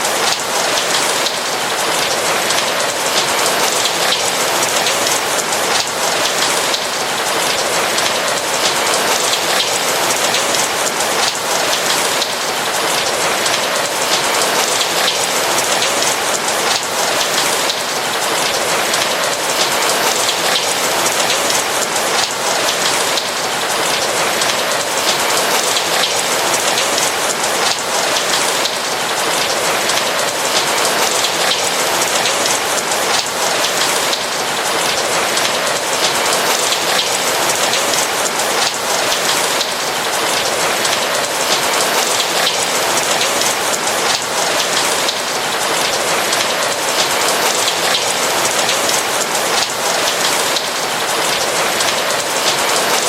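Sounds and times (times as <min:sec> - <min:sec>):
rain falling on a roof: 0:00.0 - 0:53.0.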